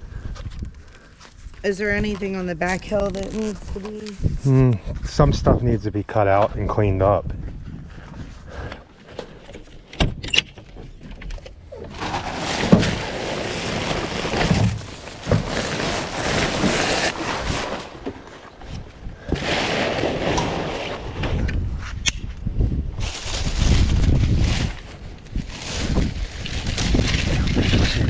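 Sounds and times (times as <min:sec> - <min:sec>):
shrub branches rustling and crackling: 0:00.9 - 0:04.4, 0:11.9 - 0:21.1, 0:23.0 - 0:28.0.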